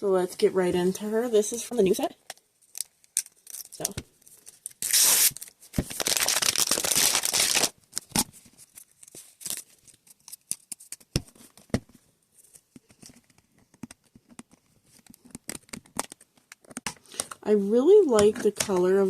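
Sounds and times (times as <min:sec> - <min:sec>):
packaging crinkling: 0:02.6 - 0:11.1
packaging being torn open: 0:02.7 - 0:11.1, 0:15.1 - 0:17.3.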